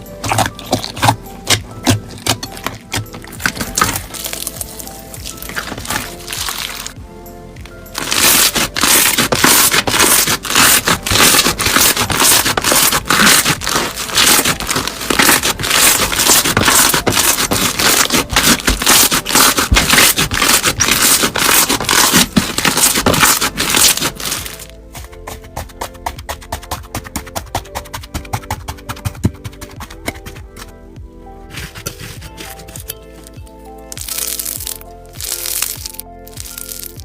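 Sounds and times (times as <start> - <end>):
crunchy slime squeezed: 0.2 - 7.0, 8.0 - 24.7, 33.9 - 37.0.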